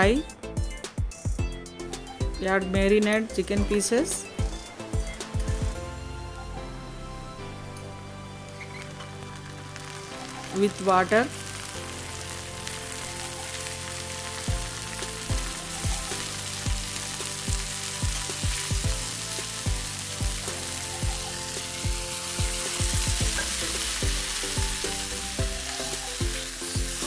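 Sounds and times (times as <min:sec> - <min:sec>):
music with steady beat: 0:00.0 - 0:10.6, 0:11.3 - 0:27.0
food sizzling in oil: 0:08.3 - 0:27.0.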